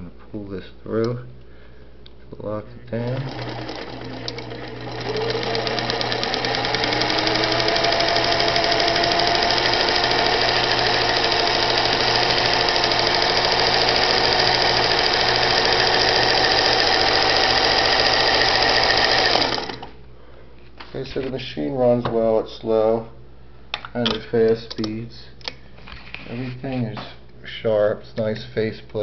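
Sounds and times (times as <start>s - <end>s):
sewing machine running: 3.0s - 20.0s.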